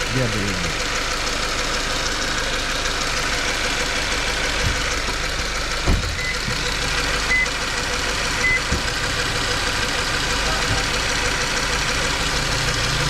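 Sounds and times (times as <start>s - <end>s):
car engine idling: 0.0s - 13.0s
low thumps: 5.8s - 6.6s.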